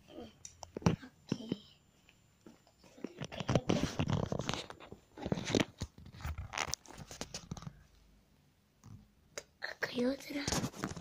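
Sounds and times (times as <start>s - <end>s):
rustling and clicking handling noises: 0.4s - 8.0s, 10.3s - 11.0s.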